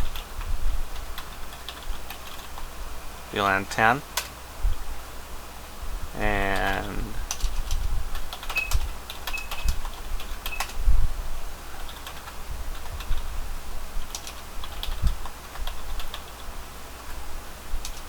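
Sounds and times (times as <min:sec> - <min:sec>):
typing on keyboard: 0:01.0 - 0:02.7, 0:06.5 - 0:10.8, 0:11.8 - 0:13.3, 0:14.0 - 0:16.5.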